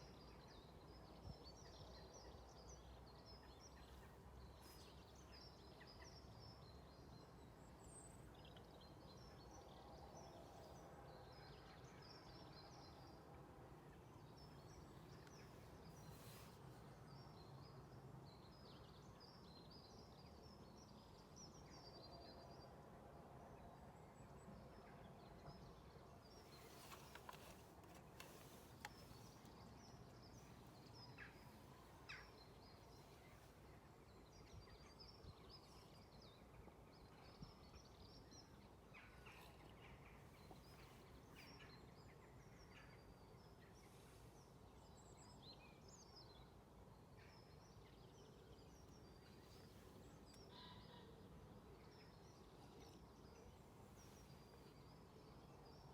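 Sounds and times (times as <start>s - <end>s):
soft clicks: 26.7s - 30.2s.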